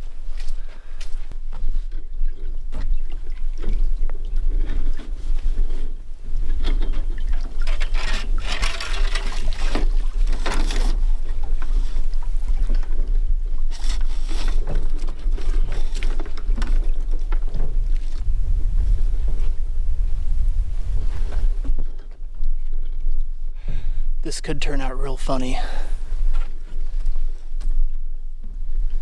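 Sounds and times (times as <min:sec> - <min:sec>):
water sloshing and splashing: 0:00.0 - 0:21.8
wind buffeting microphone: 0:00.0 - 0:24.2.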